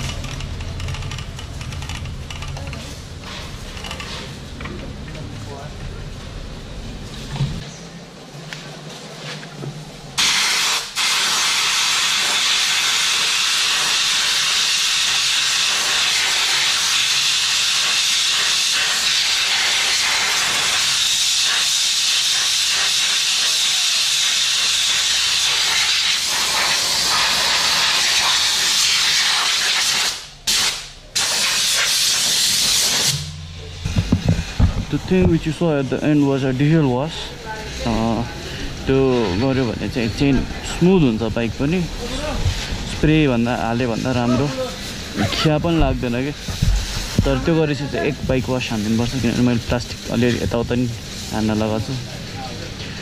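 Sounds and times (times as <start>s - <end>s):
pressurized sprayer hissing: 10.2s - 33.3s, 40.7s - 53.0s.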